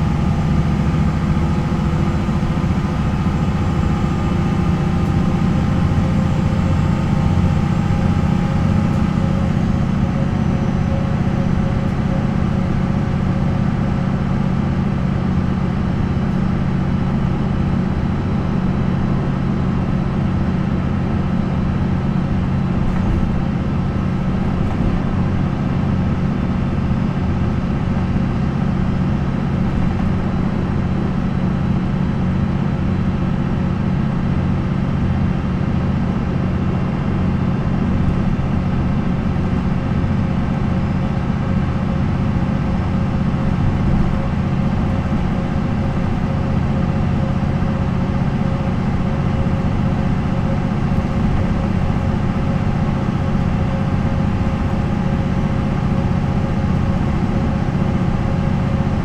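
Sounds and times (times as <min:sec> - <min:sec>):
bus diesel engine droning: 0:00.0 - 0:59.0.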